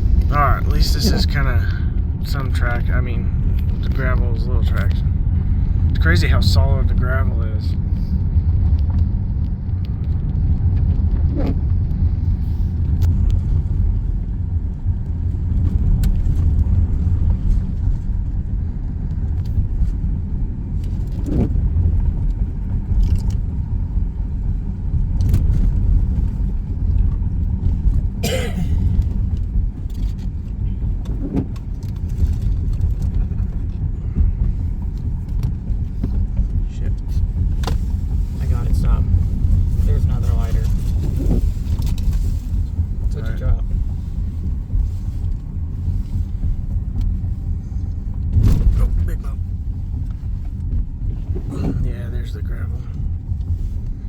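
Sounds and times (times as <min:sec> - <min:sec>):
vehicle rumbling over icy gravel: 0:00.0 - 0:54.0.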